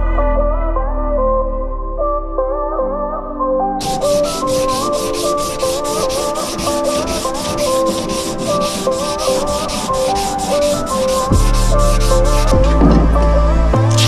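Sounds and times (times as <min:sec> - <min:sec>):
heavy bass: 0:00.0 - 0:03.8, 0:11.3 - 0:14.0
background music with melody: 0:00.0 - 0:14.0
rhythmic sanding strokes: 0:03.8 - 0:13.2.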